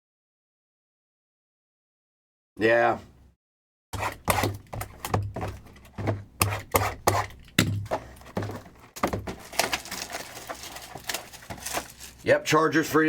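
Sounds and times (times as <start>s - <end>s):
knocks and thuds on a tabletop: 4.3s - 9.4s.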